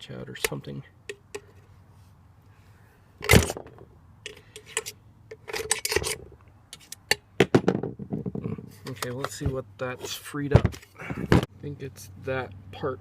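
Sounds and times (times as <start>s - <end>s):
metal and plastic scraping and clicking: 3.2s - 11.5s.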